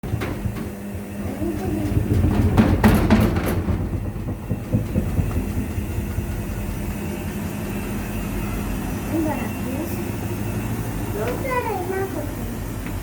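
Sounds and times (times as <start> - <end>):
sharp knocks and clatter: 0.0 - 8.6
washing machine rumbling: 0.0 - 13.0.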